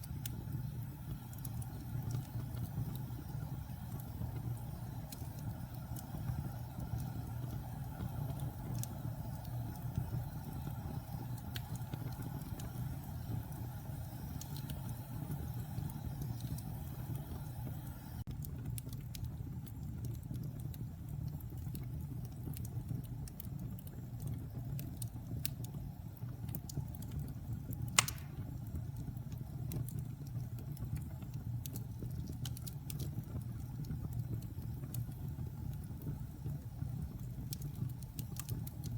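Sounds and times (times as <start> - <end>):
fire crackling: 0.0 - 38.9
flames rumbling: 0.0 - 38.9
loud sharp pop: 28.0 - 28.4.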